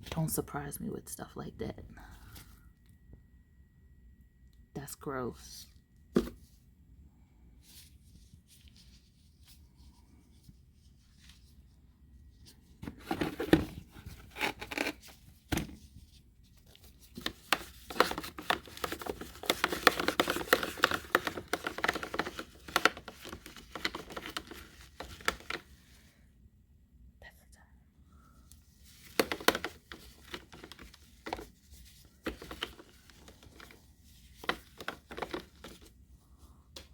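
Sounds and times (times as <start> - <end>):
plastic packaging crinkling: 16.6 - 25.6, 28.9 - 35.9.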